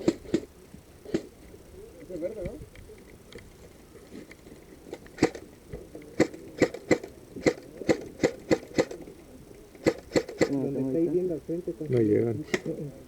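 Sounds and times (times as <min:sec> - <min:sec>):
airsoft gun shots: 0:00.0 - 0:00.5, 0:01.1 - 0:01.3, 0:05.2 - 0:05.5, 0:06.2 - 0:09.0, 0:09.8 - 0:10.6.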